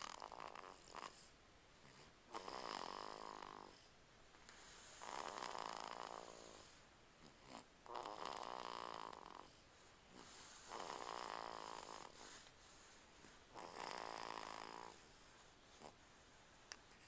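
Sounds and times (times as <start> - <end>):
person snoring: 1.9 - 3.8, 5.0 - 9.5, 10.2 - 12.2, 13.5 - 15.0.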